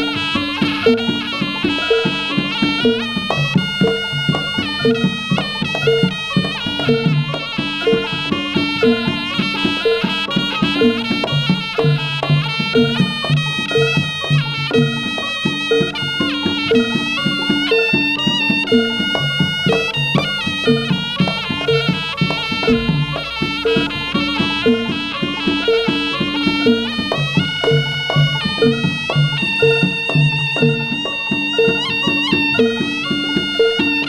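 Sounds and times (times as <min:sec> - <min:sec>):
drums: 0:00.0 - 0:34.0
shrill reed melody: 0:00.0 - 0:34.0
gong-chime pattern: 0:00.8 - 0:34.0
low bass tones: 0:22.6 - 0:25.2.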